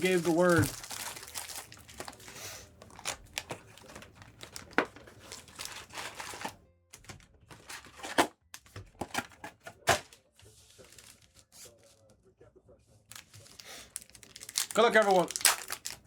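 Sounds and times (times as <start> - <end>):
plastic wrapping crinkling: 0.0 - 8.0, 10.8 - 11.6, 13.1 - 16.0.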